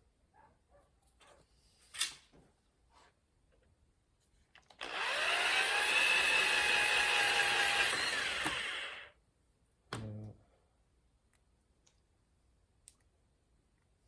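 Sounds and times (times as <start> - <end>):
power tool motor whining: 4.8 - 9.1.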